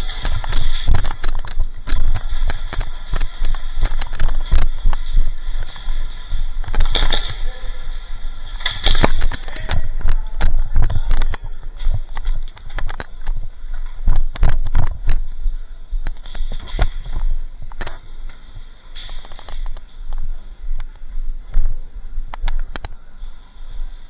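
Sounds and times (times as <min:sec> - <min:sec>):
airsoft guns firing: 0:00.0 - 0:11.3.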